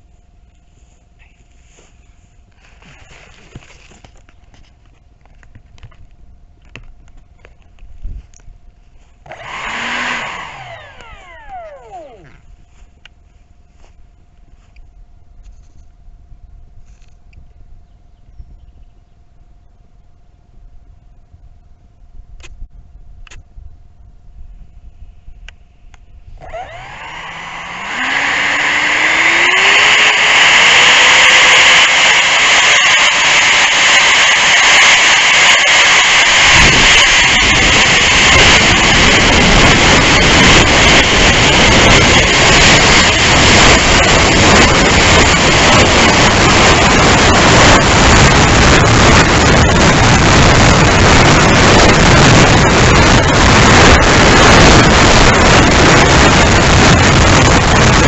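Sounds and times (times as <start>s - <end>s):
electric fan whine: 0.0s - 58.0s
wind rush: 26.2s - 58.0s.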